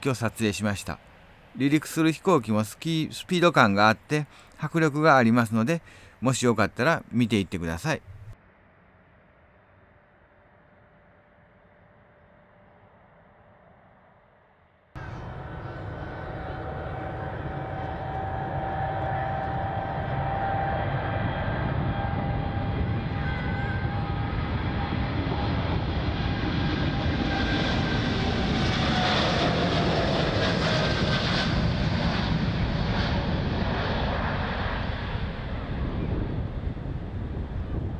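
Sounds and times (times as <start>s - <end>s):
jet engines rumbling: 0.0s - 8.4s, 15.0s - 37.9s
jet engine whine: 15.0s - 37.9s.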